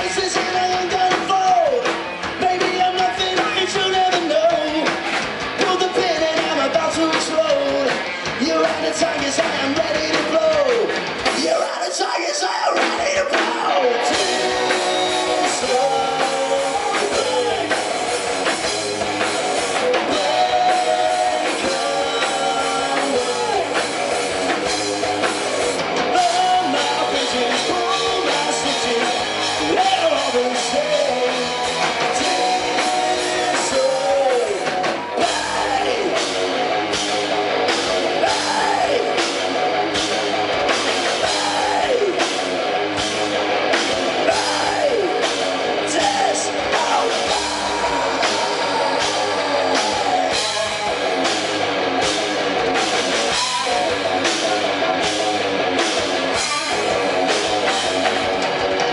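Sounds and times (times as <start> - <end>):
drum kit beat: 0.0 - 58.9
rock band playing live: 0.0 - 58.9
guitar bending pitched lines: 13.9 - 58.9.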